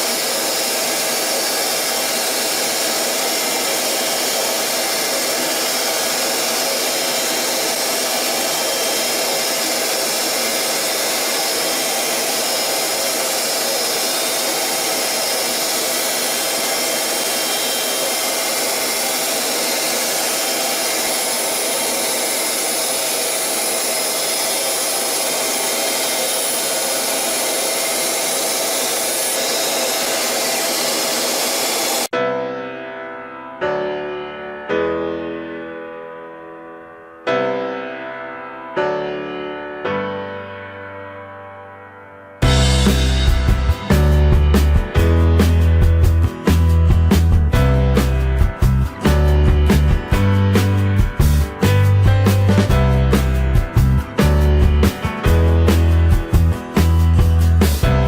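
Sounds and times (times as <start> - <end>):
lathe whirring hiss: 0.0 - 32.1
high whine: 42.4 - 58.0.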